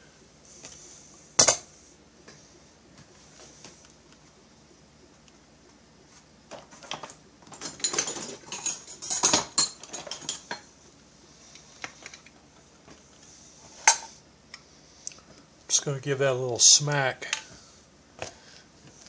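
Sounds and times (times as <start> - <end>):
small metal tools clinking: 7.0 - 10.6.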